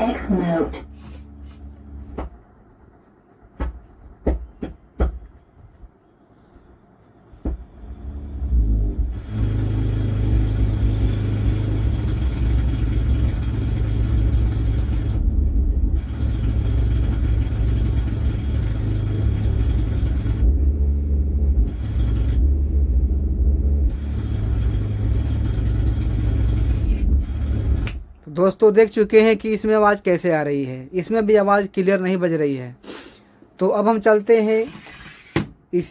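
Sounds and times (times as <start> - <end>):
loud distorted rumbling from loudspeaker: 7.9 - 27.8.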